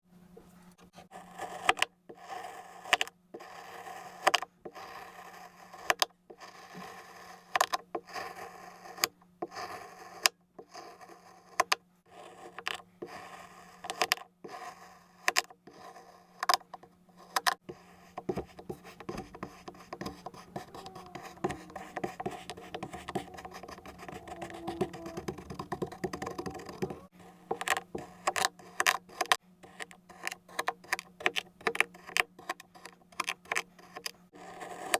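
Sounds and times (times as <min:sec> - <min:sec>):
faint low hum: 0:16.3 - 0:34.8.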